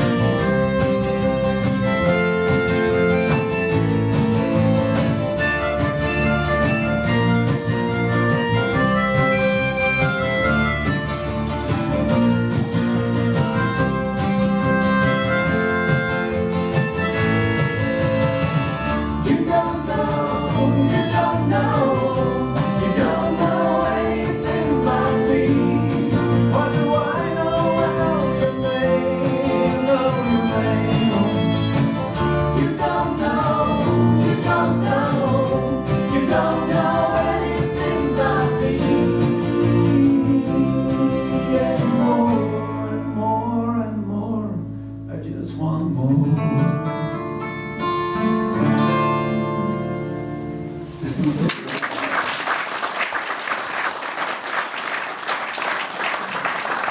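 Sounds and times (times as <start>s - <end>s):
acoustic guitar: 0.0s - 56.9s
person singing: 19.2s - 44.6s.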